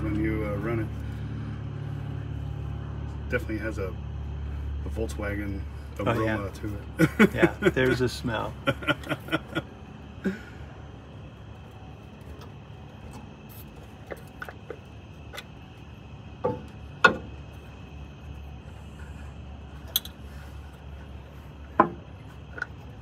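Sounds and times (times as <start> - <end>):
low hum: 0.0 - 23.0
hand tools clicking on engine: 19.8 - 20.3, 21.8 - 23.0.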